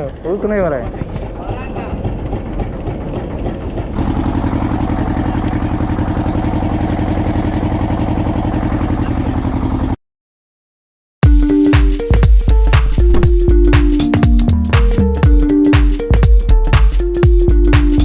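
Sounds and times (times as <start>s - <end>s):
boat engine drone: 0.0s - 10.0s
electronic music: 11.2s - 18.0s.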